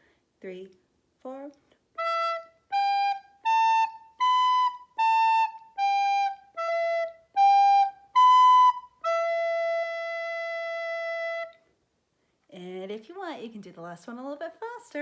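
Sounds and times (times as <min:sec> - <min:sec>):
soprano recorder playing notes: 0:02.0 - 0:11.6.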